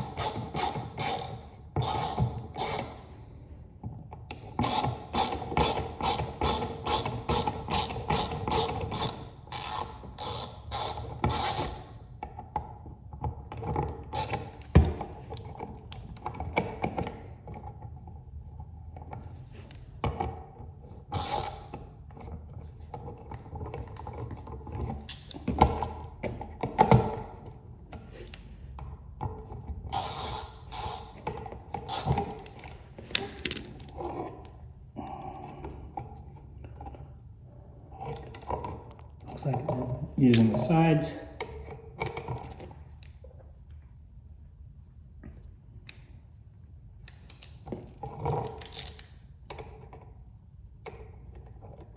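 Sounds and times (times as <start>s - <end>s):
ratchet clicking: 0.0s - 3.0s, 4.6s - 11.9s, 14.2s - 15.0s, 21.2s - 21.8s, 29.9s - 31.2s, 31.9s - 32.4s.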